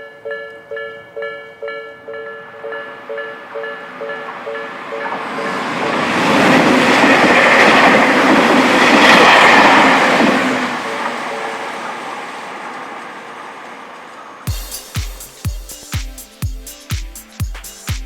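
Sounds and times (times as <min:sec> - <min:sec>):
crossing warning bell ringing: 0:00.0 - 0:13.2
train wheels clattering on rails: 0:02.2 - 0:14.5.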